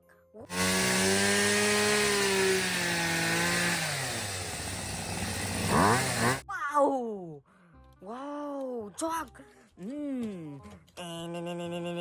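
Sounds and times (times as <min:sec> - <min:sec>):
buzzing motor-like drone: 0:00.5 - 0:06.4.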